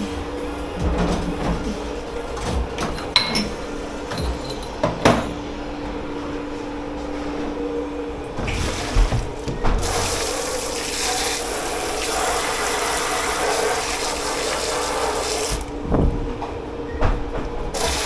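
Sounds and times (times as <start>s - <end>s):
machine hum: 0.0s - 18.0s
crockery and pans clinking: 2.5s - 5.5s.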